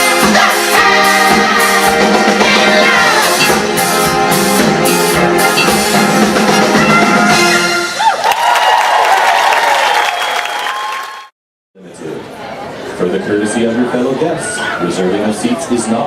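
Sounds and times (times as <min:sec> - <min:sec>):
person singing: 0:00.0 - 0:05.9
drum kit: 0:00.0 - 0:08.1
live band playing: 0:00.0 - 0:08.1.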